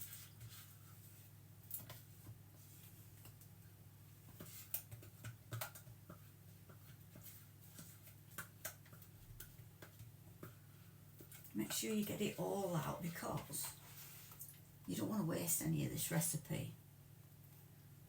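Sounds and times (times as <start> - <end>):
low steady hum: 8.9 - 18.0.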